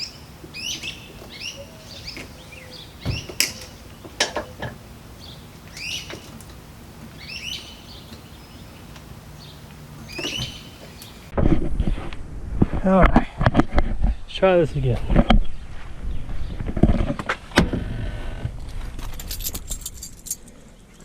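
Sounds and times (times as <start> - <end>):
songbird chirping: 0.0 - 11.3.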